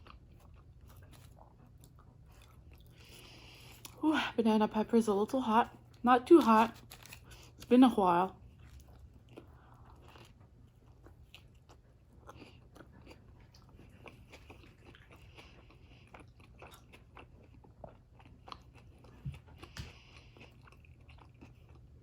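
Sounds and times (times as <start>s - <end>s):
person chewing: 0.0s - 4.0s, 8.4s - 22.0s.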